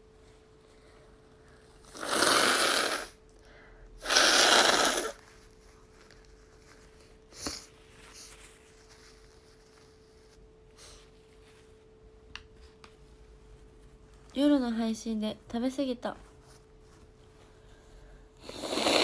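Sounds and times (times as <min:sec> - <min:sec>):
woman blowing her nose: 0:01.9 - 0:03.2, 0:04.0 - 0:05.2, 0:18.4 - 0:19.0.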